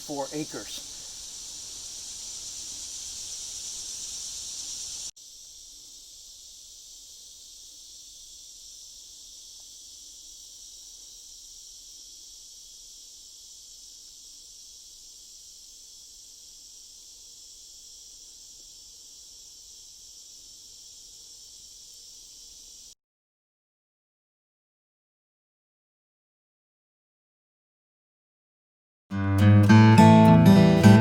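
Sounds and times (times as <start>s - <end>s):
forest insects chorus: 0.0s - 23.0s.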